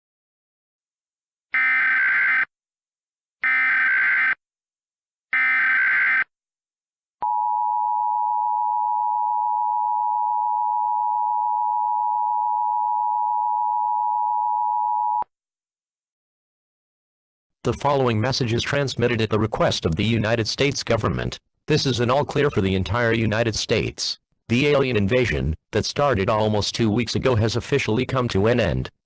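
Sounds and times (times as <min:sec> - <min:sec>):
long steady attention tone: 0:07.2 - 0:15.2.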